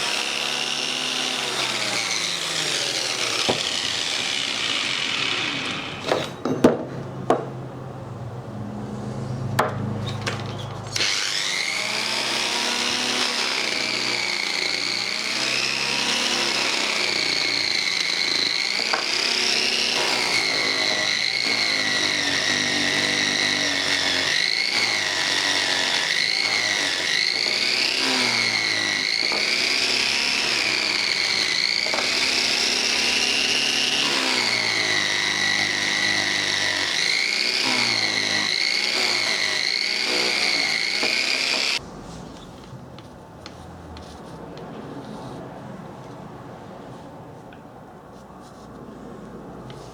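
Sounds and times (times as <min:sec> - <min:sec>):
electric power tool whining: 0:00.0 - 0:06.4, 0:10.2 - 0:41.8.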